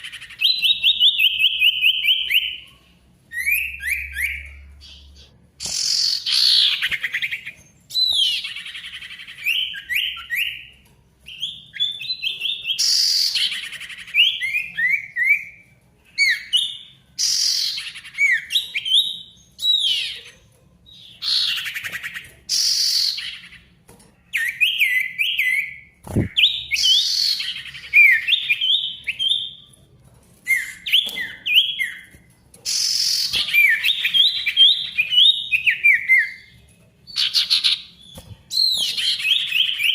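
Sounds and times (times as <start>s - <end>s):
bird song whistles: 3.3s - 10.7s, 11.3s - 15.6s, 16.2s - 20.2s, 21.0s - 23.6s, 24.3s - 29.6s, 32.7s - 36.5s, 37.1s - 39.9s.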